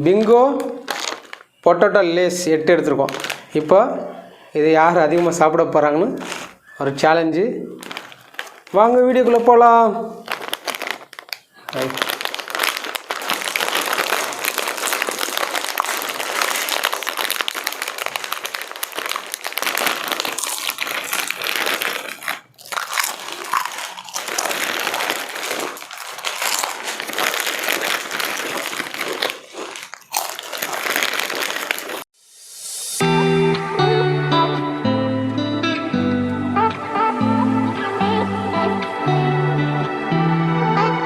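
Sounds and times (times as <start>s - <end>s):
plastic chip packets crinkling: 0.0s - 3.9s, 4.6s - 32.1s
chips being crunched: 0.1s - 1.6s, 3.0s - 3.7s, 6.1s - 6.6s, 7.8s - 9.6s, 10.2s - 32.1s.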